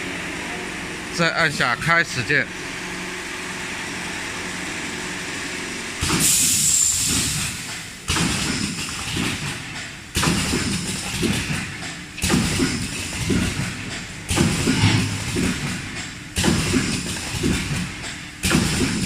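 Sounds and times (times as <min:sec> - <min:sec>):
packing machine running: 0:02.5 - 0:19.0
burst of hiss: 0:06.0 - 0:07.4.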